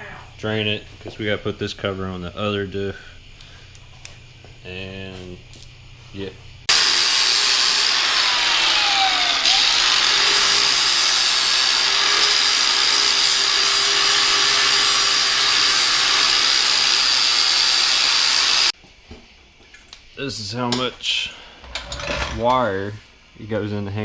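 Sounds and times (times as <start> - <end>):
power tool whining and hissing: 6.7 - 18.8.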